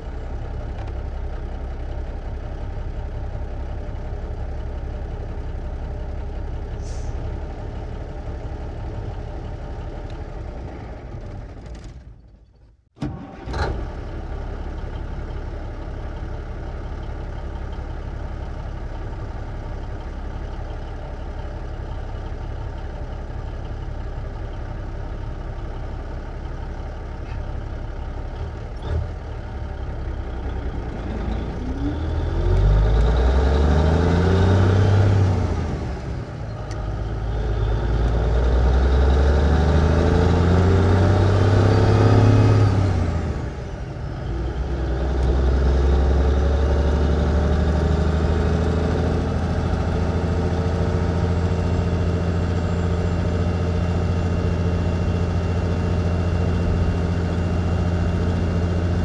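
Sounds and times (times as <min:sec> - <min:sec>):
truck engine revving: 0:30.5 - 0:36.2, 0:37.0 - 0:59.0.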